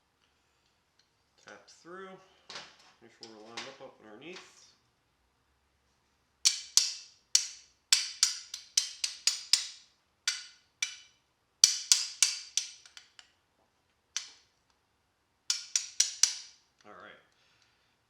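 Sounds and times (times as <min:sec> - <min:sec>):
hammer striking steel pin: 0:06.5 - 0:13.1, 0:15.5 - 0:16.6.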